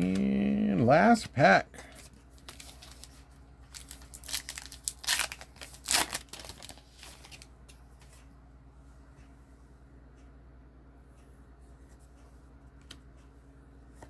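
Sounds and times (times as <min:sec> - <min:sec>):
wrapper tearing and crinkling: 0:03.7 - 0:07.4.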